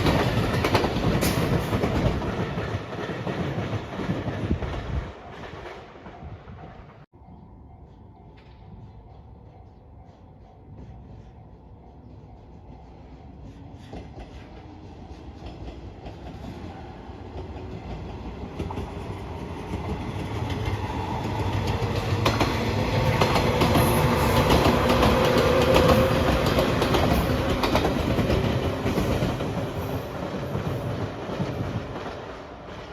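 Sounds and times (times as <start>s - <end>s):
train wheels clacking over rail joints: 0.0s - 6.8s, 13.5s - 32.9s.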